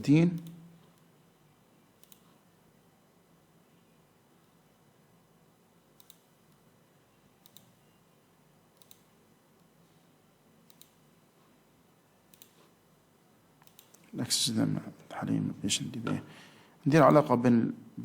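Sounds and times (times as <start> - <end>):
computer mouse clicks: 2.0 - 2.4, 6.0 - 6.6, 7.4 - 7.8, 8.7 - 9.8, 10.6 - 11.0, 12.3 - 12.8, 13.6 - 14.1.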